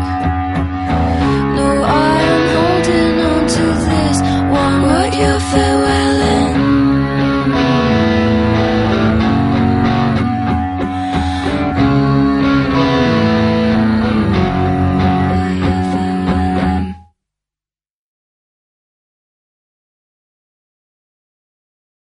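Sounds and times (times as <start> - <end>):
music with guitar: 0.0 - 17.1.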